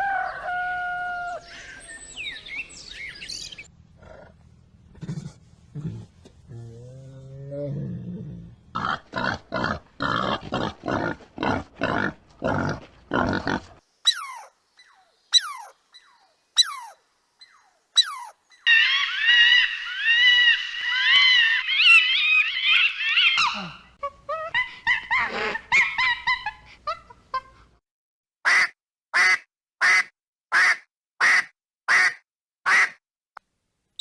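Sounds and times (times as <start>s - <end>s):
animal grunts: 4.0s - 13.8s
high wavering animal calls: 14.0s - 26.2s
shrill animal calls: 14.0s - 26.5s.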